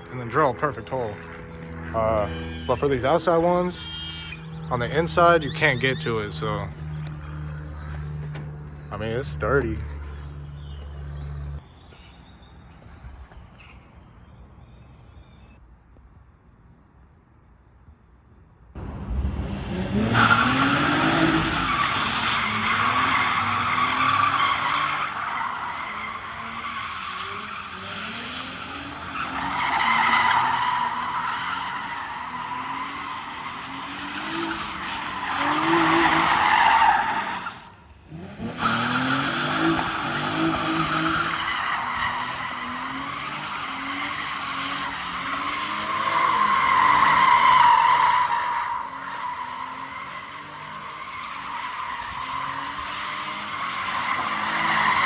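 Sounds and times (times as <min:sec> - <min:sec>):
car engine revving: 0:00.0 - 0:11.6, 0:18.8 - 0:55.0
tyres squealing: 0:01.8 - 0:11.5, 0:20.2 - 0:37.6.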